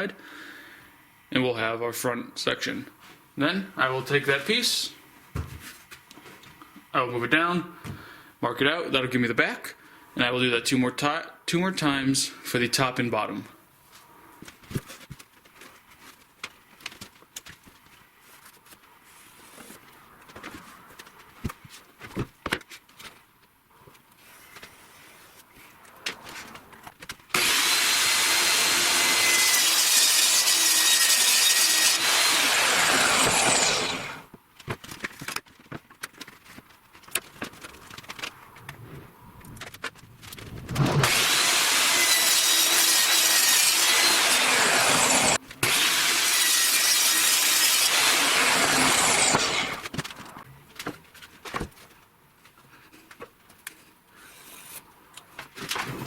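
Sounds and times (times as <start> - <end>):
power saw cutting board: 27.3 - 34.3, 40.8 - 49.9.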